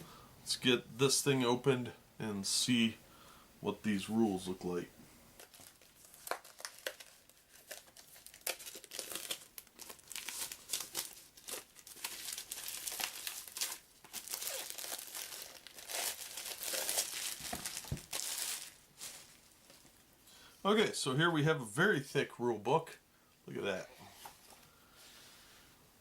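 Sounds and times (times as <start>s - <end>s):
plastic shrink wrap tearing: 5.4s - 20.0s.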